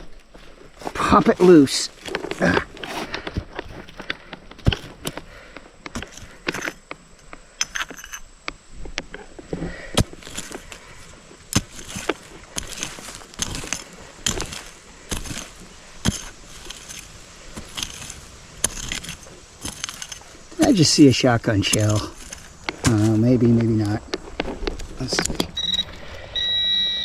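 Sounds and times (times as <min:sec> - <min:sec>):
digging tool chopping soil: 0:09.8 - 0:10.9, 0:11.5 - 0:24.0.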